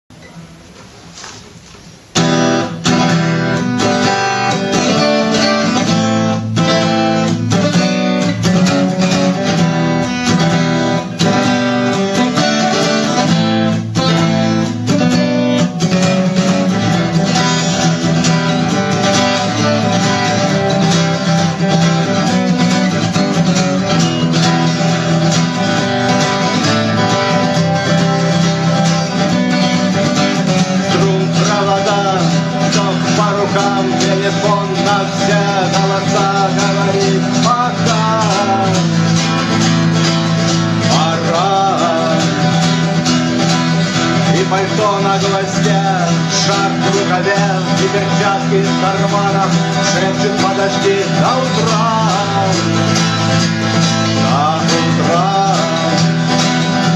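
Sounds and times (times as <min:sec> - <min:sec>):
acoustic guitar strumming chords: 0:00.2 - 0:56.9.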